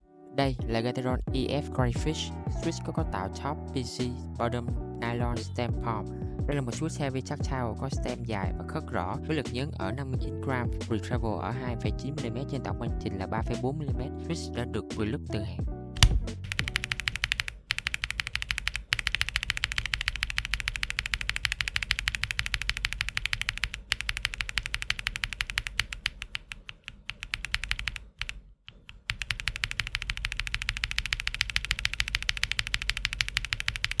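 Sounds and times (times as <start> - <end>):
fast typing on mechanical keyboard: 16.0 - 34.0.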